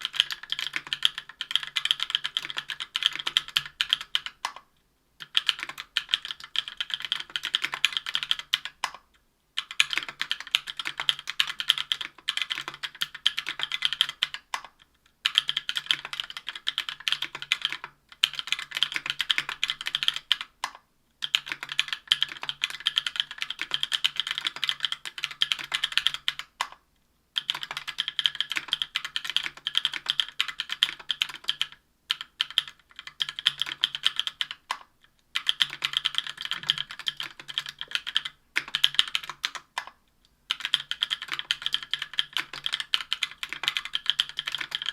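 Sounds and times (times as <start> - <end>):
keyboard typing: 0.0 - 26.8, 27.4 - 44.9.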